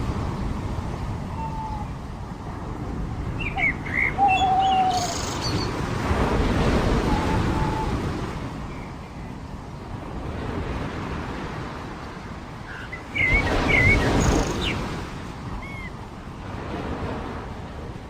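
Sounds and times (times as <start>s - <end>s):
bird chirps: 3.4s - 5.7s
surf washing onto beach: 4.8s - 8.7s, 9.8s - 18.0s.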